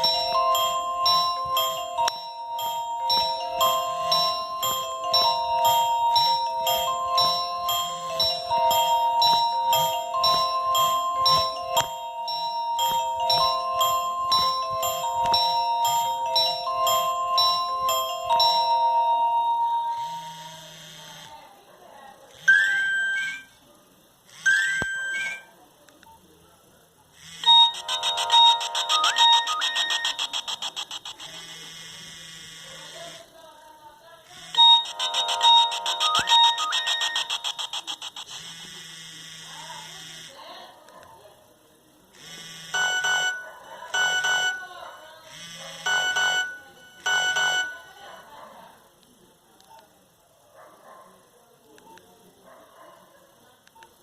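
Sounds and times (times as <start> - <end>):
buzzy pulsing ringtone: 0.0 - 21.4, 22.4 - 23.6, 24.3 - 25.6, 27.2 - 33.3, 34.3 - 40.6, 42.2 - 48.2
phone vibration buzz: 19.9 - 21.4, 27.2 - 33.3, 34.3 - 40.6, 42.2 - 43.3, 45.2 - 47.9
rising electronic beeps: 27.5 - 31.4, 34.6 - 38.4.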